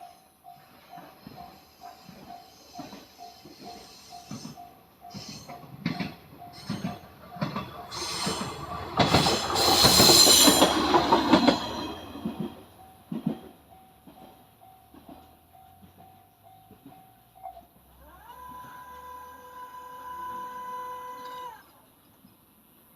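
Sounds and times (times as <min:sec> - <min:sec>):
diesel railcar passing: 0:00.0 - 0:22.9
train wheel clatter: 0:00.5 - 0:17.6
high wheel squeal: 0:01.4 - 0:05.7, 0:06.5 - 0:12.8.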